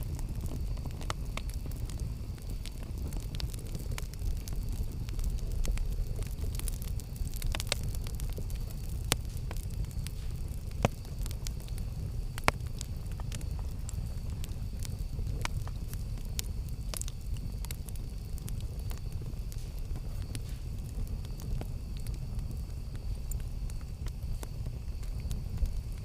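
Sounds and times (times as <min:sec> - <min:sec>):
campfire crackling and popping: 0:00.0 - 0:26.0.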